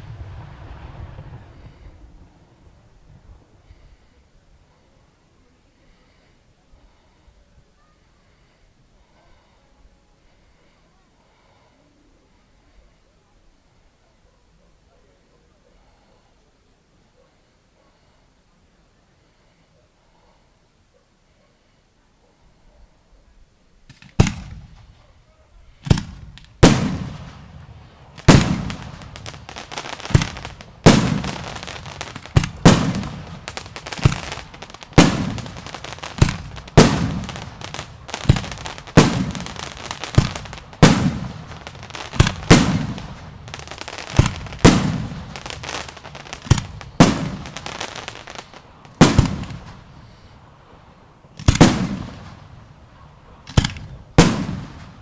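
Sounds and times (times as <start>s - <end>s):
rolling echo and crackle: 0.0s - 4.2s, 25.8s - 55.0s.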